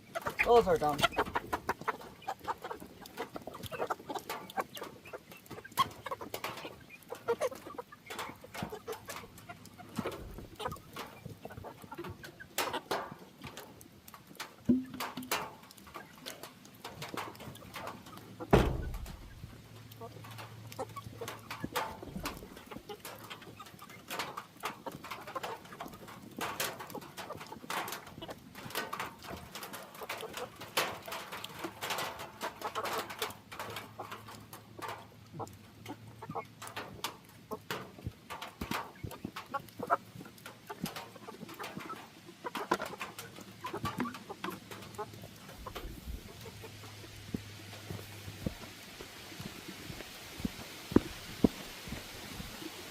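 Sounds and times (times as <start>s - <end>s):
chickens clucking: 0.0s - 52.9s
loud knock: 18.5s - 19.3s.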